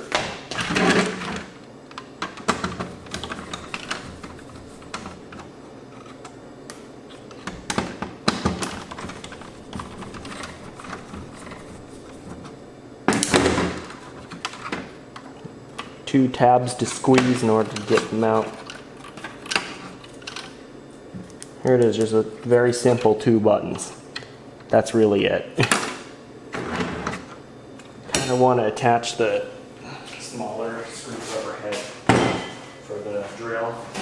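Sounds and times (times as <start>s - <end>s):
parts clattering: 7.1s - 15.3s.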